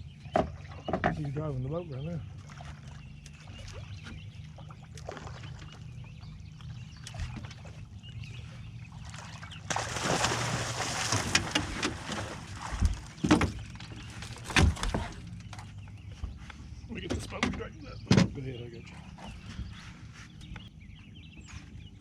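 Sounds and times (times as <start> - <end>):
boat motor running: 0.0 - 21.5
thumps against boat: 0.3 - 1.3, 9.7 - 16.4, 17.0 - 18.5
heavy splashing: 9.0 - 13.7.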